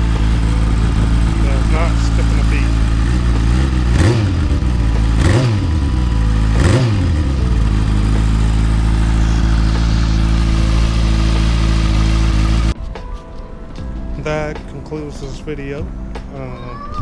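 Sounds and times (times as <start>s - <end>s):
motorcycle engine revving and idling: 0.0s - 12.8s.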